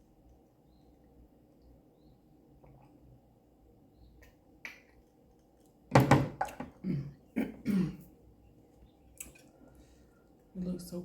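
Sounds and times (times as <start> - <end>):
woman clearing her throat: 6.8 - 8.1
woman coughing: 6.8 - 8.1.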